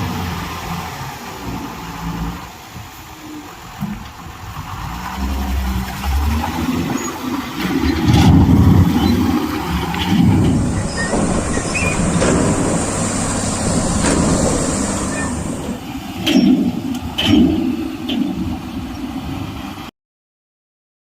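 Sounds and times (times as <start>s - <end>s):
heavy diesel machinery running: 3.8s - 19.9s
sharp metallic knocks: 9.8s - 18.4s.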